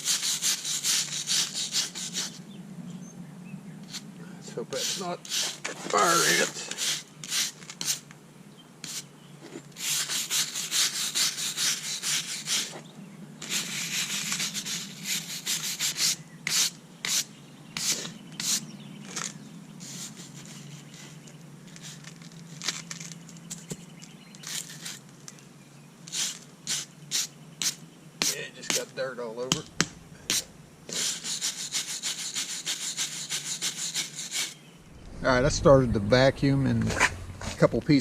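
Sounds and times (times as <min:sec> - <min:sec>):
wire brush scrubbing concrete: 0:00.0 - 0:02.4, 0:03.9 - 0:08.0, 0:09.8 - 0:12.8, 0:13.4 - 0:17.2, 0:17.8 - 0:18.6, 0:19.8 - 0:21.2, 0:26.1 - 0:34.6.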